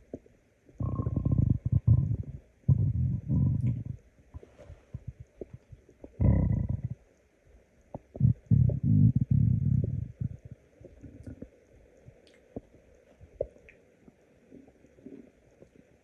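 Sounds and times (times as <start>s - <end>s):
stomach growling: 0.0s - 7.0s, 7.9s - 16.0s.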